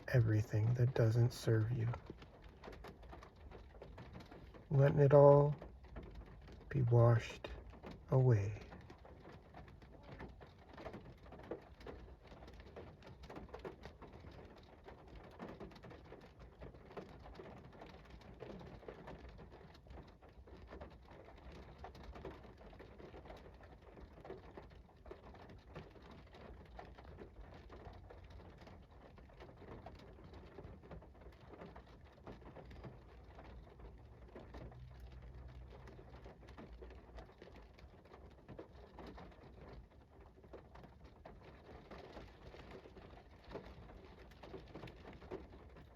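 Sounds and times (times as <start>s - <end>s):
rain falling: 0.0s - 45.9s
raindrops ticking: 0.0s - 45.9s.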